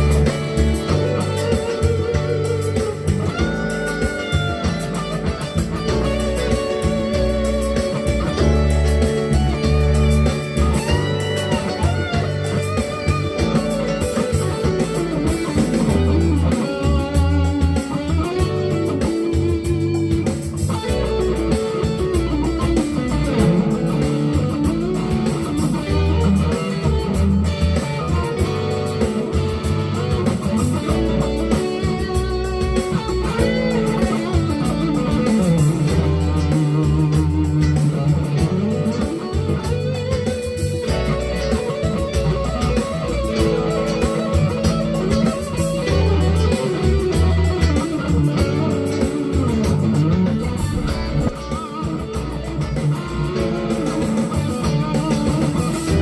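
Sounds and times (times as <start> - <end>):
electric guitar lead lines: 0.0 - 56.0
light percussive backing: 0.0 - 56.0
sustained low bass notes: 44.5 - 53.6.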